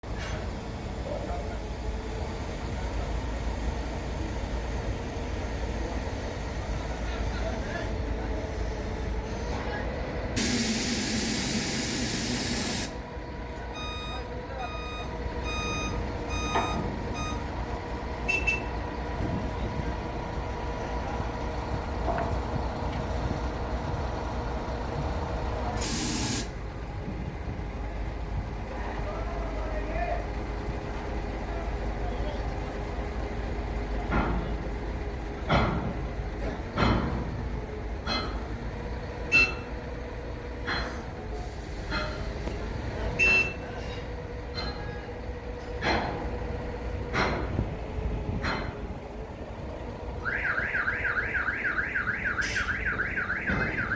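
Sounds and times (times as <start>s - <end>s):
heavy machinery humming: 0.0s - 53.9s
hiss of released air: 10.4s - 13.0s, 25.8s - 26.6s, 41.4s - 42.2s.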